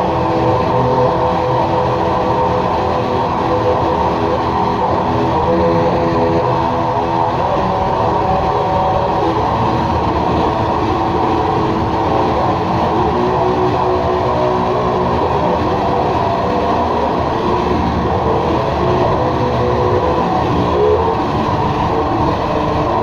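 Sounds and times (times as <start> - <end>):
held shifting drone tones: 0.0 - 23.0.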